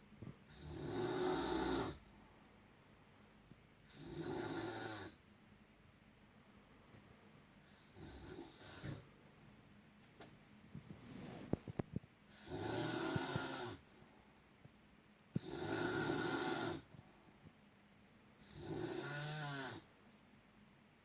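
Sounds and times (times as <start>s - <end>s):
quiet breathing: 0.3s - 4.3s, 6.3s - 9.4s, 10.7s - 14.7s, 15.3s - 17.6s
person snoring loudly: 0.5s - 2.0s, 3.9s - 5.2s, 12.3s - 13.8s, 15.4s - 16.9s, 18.4s - 19.9s.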